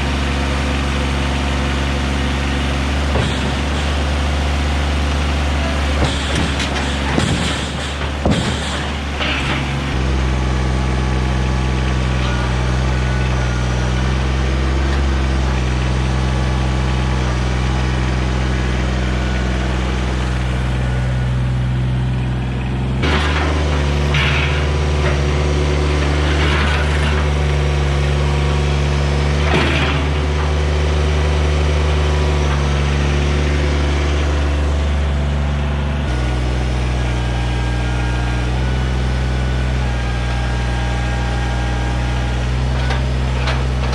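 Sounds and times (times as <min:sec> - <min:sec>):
tractor diesel engine running: 0:00.0 - 0:43.9
short clatters: 0:03.0 - 0:10.0.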